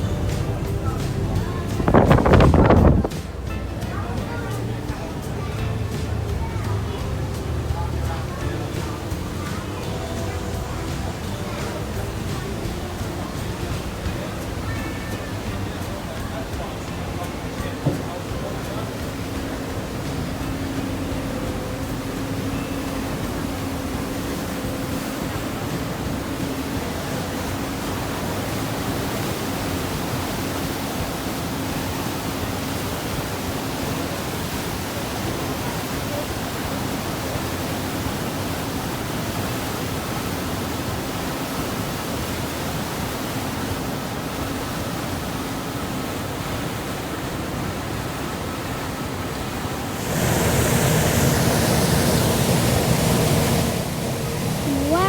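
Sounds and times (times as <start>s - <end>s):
low engine hum: 0.0s - 55.0s
water rushing: 0.0s - 55.0s.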